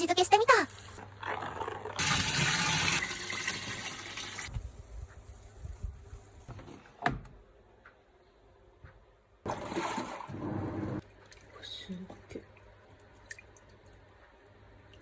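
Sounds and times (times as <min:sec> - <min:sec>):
water sloshing in washing machine: 0:09.5 - 0:11.6.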